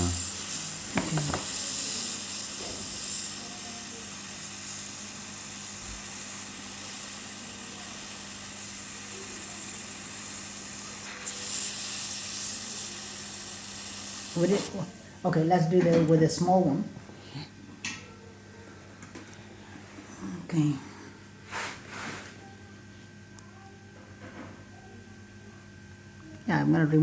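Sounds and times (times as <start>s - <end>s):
hot-air blower hissing: 0.0s - 17.5s, 19.1s - 22.4s.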